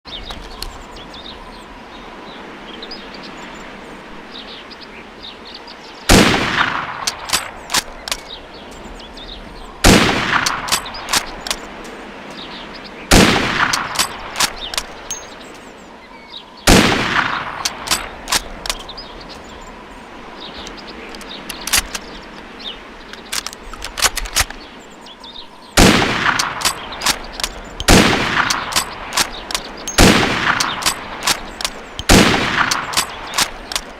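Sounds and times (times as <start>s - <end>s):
rifle shots: 27.8s - 28.9s, 29.9s - 31.4s, 32.0s - 33.1s.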